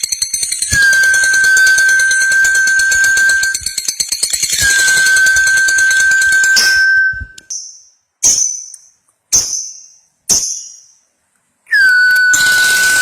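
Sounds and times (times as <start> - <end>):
sharp high bird calls: 11.7 - 13.0.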